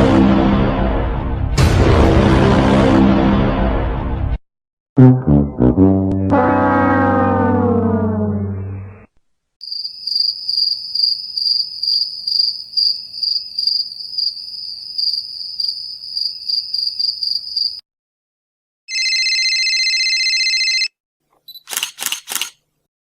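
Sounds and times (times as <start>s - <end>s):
crickets chirping: 9.6s - 17.8s.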